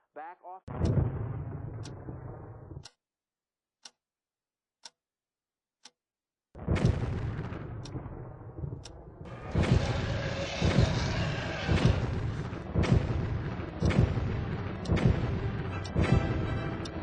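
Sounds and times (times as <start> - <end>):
heavy deep booms: 0.7 - 2.8, 6.6 - 16.7
continuous rumbling background: 6.7 - 17.0.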